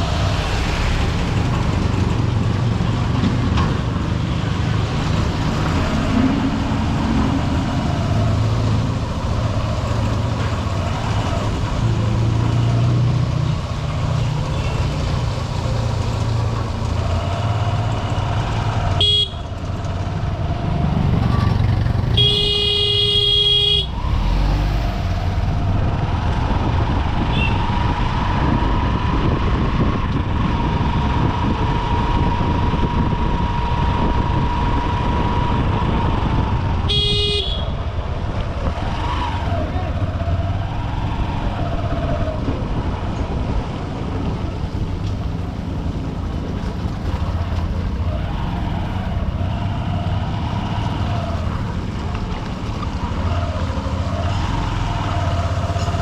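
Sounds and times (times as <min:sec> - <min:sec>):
road noise: 0:00.0 - 0:56.0
horn toot: 0:19.0 - 0:19.4, 0:22.1 - 0:24.2, 0:36.9 - 0:37.7
loud horn blast: 0:19.0 - 0:19.5, 0:22.1 - 0:24.2, 0:36.9 - 0:37.8.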